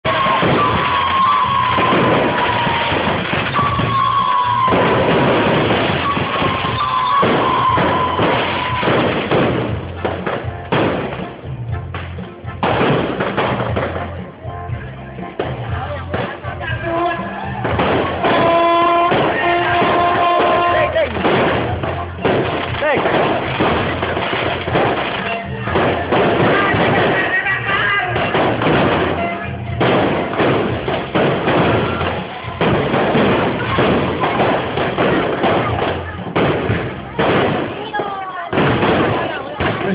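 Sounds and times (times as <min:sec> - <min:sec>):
fireworks thudding: 0:00.0 - 0:14.4, 0:15.2 - 0:39.9
background music: 0:00.0 - 0:39.9.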